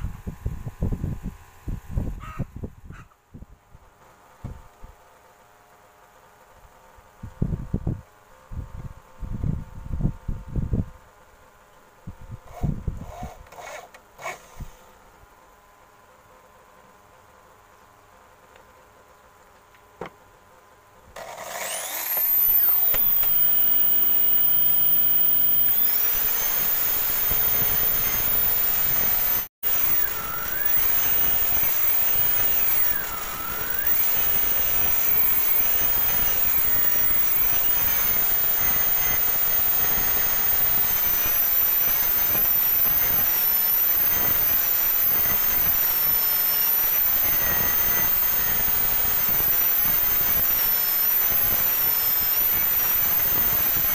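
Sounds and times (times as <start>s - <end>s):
power tool whining: 21.2s - 53.9s.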